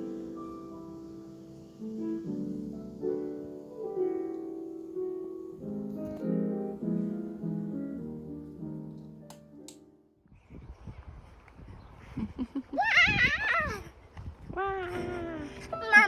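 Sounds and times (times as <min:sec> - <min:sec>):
gentle piano chords: 0:00.0 - 0:10.2, 0:14.6 - 0:16.0.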